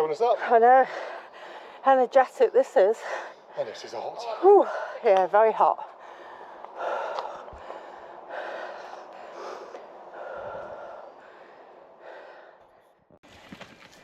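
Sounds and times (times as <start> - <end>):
person breathing hard: 5.8 - 12.9.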